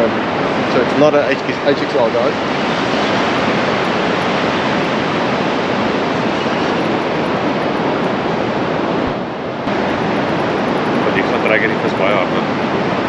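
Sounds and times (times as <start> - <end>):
surf breaking on shore: 0.3 - 9.1.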